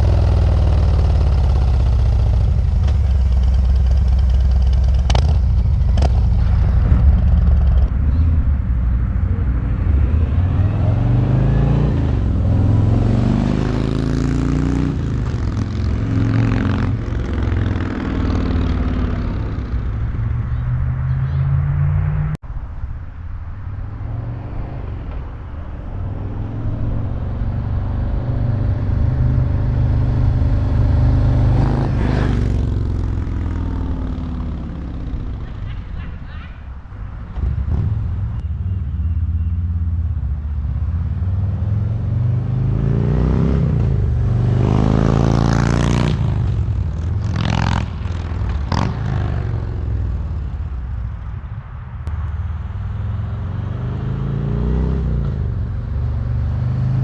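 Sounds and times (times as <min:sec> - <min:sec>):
motorcycle accelerating past: 0:10.2 - 0:19.9, 0:27.0 - 0:35.6, 0:41.0 - 0:49.9, 0:53.0 - 0:57.0.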